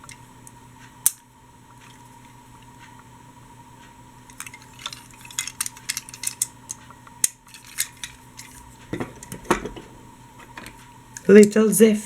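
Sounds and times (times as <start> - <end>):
metal toy trains clinking: 4.3 - 9.8.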